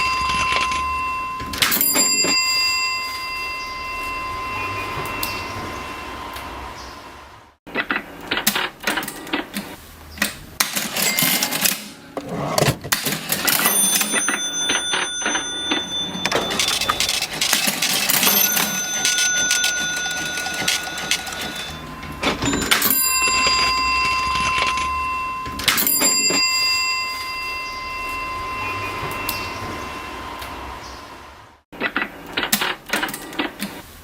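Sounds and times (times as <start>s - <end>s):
cash register bell ringing: 0.0s - 6.4s, 10.6s - 30.8s
cash register keys clacking: 10.6s - 27.3s.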